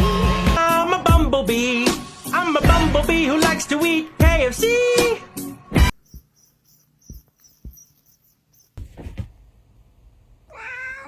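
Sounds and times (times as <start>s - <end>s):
short taps: 6.0s - 9.3s
rustling: 6.0s - 9.5s
cat meowing: 10.5s - 11.0s.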